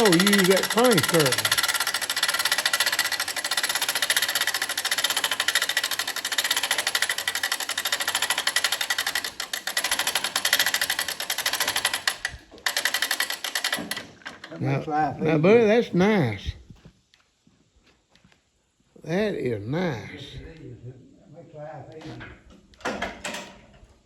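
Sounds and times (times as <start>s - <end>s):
small machine clattering: 0.0s - 14.6s.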